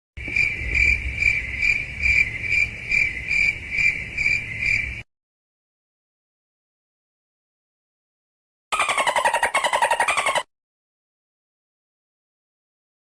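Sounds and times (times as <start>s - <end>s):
cricket chirping: 0.2s - 5.1s.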